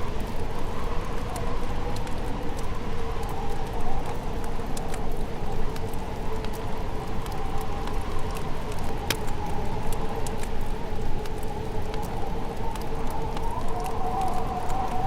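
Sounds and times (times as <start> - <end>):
wood fire crackling and popping: 0.1 - 15.0.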